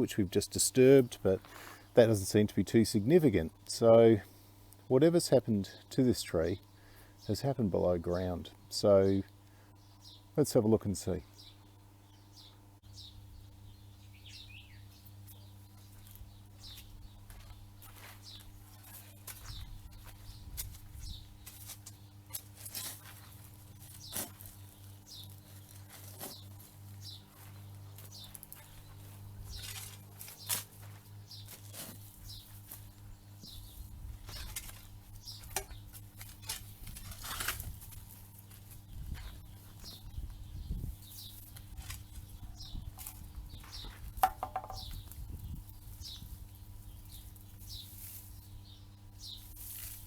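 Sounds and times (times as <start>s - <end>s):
small birds chirping: 5.7s - 50.0s
digging in soil: 18.0s - 33.0s, 33.7s - 40.0s, 45.0s - 48.6s, 49.2s - 50.0s.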